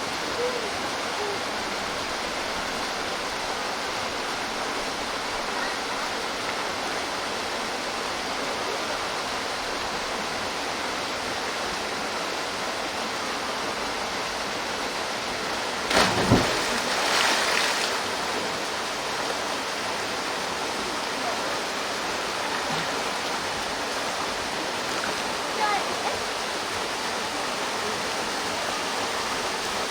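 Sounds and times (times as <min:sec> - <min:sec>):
waterfall pouring into a pool: 0:11.8 - 0:29.9
person diving into water: 0:15.8 - 0:18.3.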